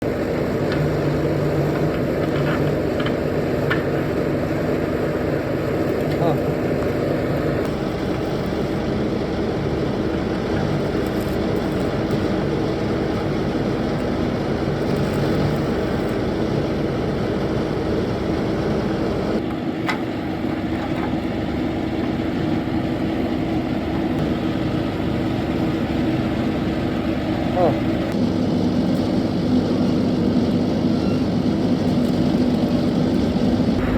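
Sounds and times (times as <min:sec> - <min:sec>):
engine running: 0:00.0 - 0:33.9.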